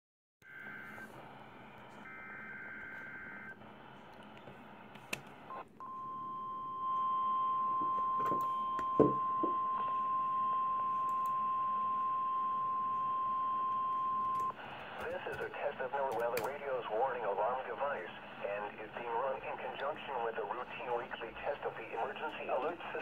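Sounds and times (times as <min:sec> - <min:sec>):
steady warning alarm tone: 0:02.0 - 0:03.6, 0:05.8 - 0:14.6
radio hiss: 0:14.5 - 0:23.0.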